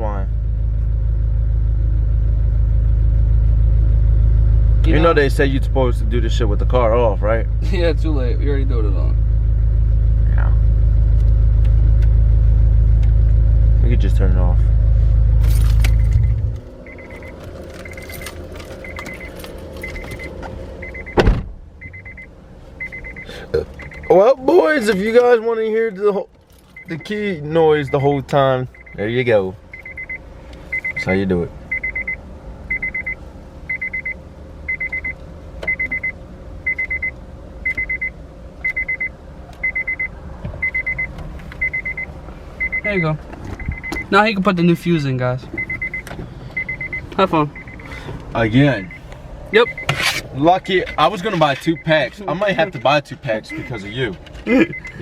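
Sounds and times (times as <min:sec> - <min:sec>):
car engine idling: 0:00.0 - 0:55.0
low steady hum: 0:00.0 - 0:55.0
warning chime beeps: 0:15.7 - 0:21.2, 0:21.8 - 0:24.3, 0:26.8 - 0:44.4, 0:45.6 - 0:55.0
loud thump: 0:21.1 - 0:21.6.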